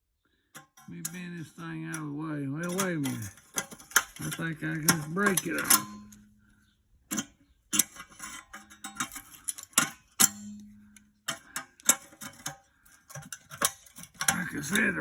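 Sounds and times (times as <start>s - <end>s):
metal clanking and knocking: 0.6s - 6.3s.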